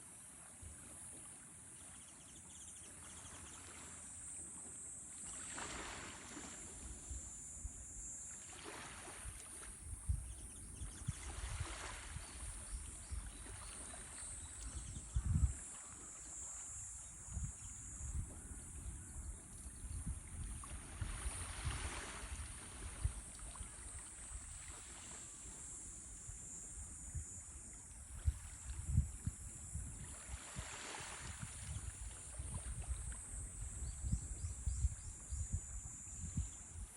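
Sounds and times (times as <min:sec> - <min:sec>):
water washing in swells: 0:05.2 - 0:07.5, 0:08.2 - 0:09.8, 0:11.0 - 0:14.8, 0:20.3 - 0:26.2, 0:27.3 - 0:33.6
wind gusting on microphone: 0:14.6 - 0:15.7, 0:17.0 - 0:23.3, 0:28.0 - 0:36.9.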